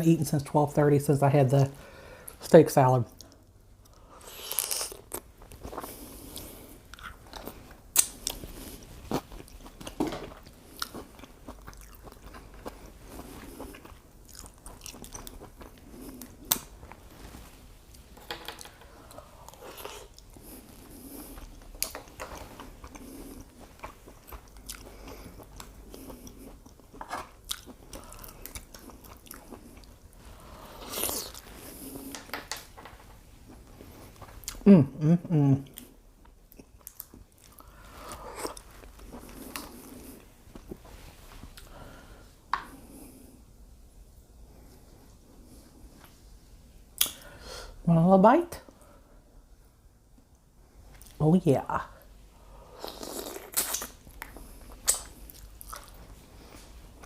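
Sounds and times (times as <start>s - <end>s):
person chewing and biting: 3.9s - 17.0s, 19.0s - 30.0s, 30.7s - 32.2s, 36.5s - 40.8s, 52.8s - 57.0s.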